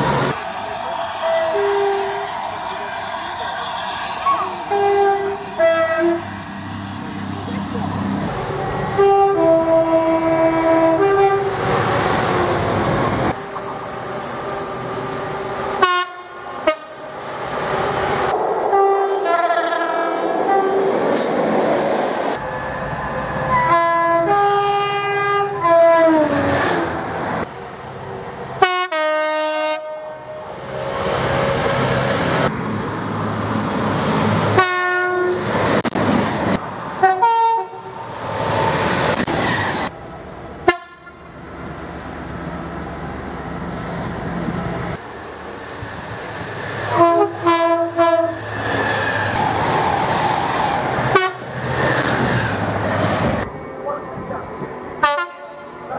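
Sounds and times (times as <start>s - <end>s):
train rumble and clatter: 0.0s - 55.9s
train horns: 1.1s - 2.4s, 4.2s - 6.3s, 8.4s - 11.9s, 15.6s - 17.2s, 17.8s - 20.9s, 23.5s - 26.8s, 28.6s - 30.6s, 34.5s - 35.5s, 37.0s - 38.0s, 40.6s - 41.2s, 46.9s - 48.5s, 51.1s - 51.5s, 55.0s - 55.9s.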